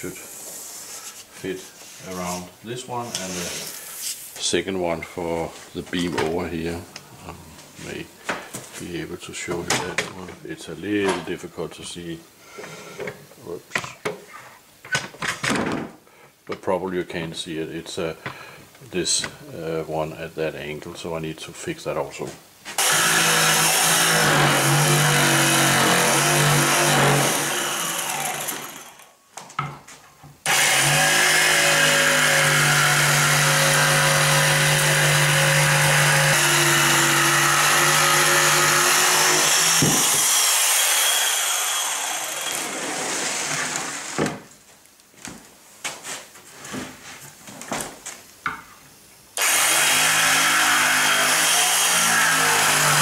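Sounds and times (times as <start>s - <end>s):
electric power tool cutting: 22.8s - 29.1s, 30.4s - 43.1s, 49.4s - 53.0s.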